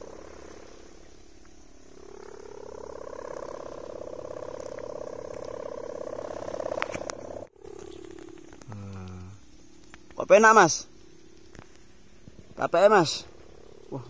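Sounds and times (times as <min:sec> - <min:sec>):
kite hummer droning buzz: 0:00.0 - 0:14.0.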